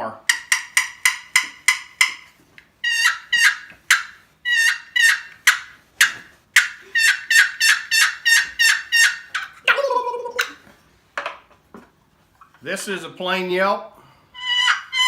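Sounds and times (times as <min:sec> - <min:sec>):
turkey box call raspy notes: 0:00.3 - 0:10.6, 0:14.4 - 0:15.0.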